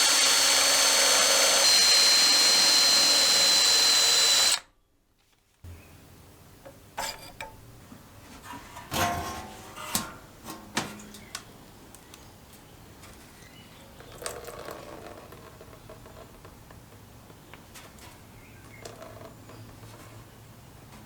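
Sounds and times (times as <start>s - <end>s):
soft rustle: 5.1s - 5.7s.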